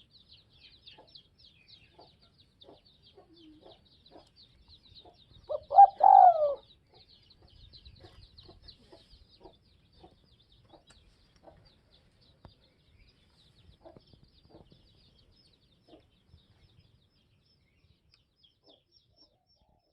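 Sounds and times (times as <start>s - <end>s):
faint high-pitched chirping: 0.0s - 19.9s
dove cooing: 5.5s - 6.6s.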